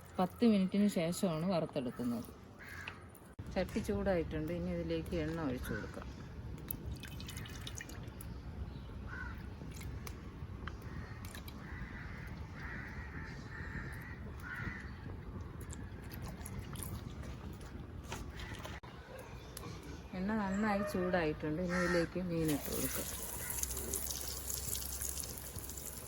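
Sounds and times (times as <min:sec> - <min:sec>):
crows cawing: 0:02.6 - 0:03.1, 0:09.1 - 0:09.4, 0:10.8 - 0:15.1, 0:21.6 - 0:22.1.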